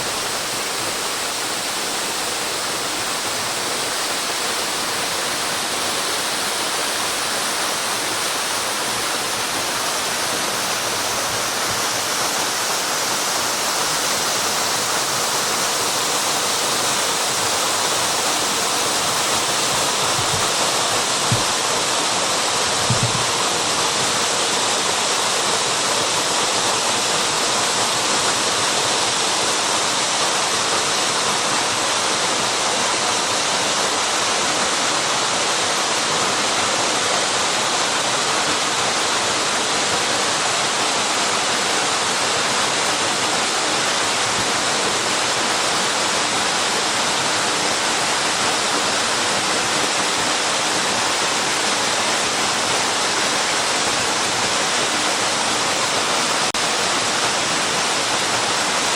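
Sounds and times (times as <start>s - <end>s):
waterfall rushing: 0.0s - 58.9s.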